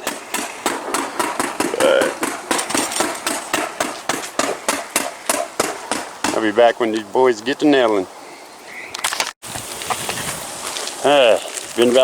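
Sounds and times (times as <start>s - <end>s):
hand tools knocking on a roof: 0.0s - 6.4s.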